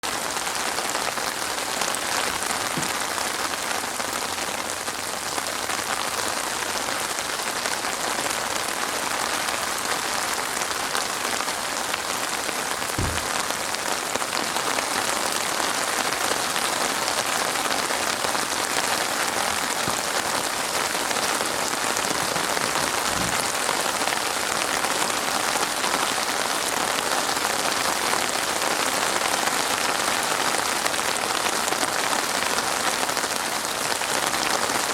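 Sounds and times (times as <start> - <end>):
dense rain falling: 0.0 - 34.9
low thuds: 13.0 - 13.7.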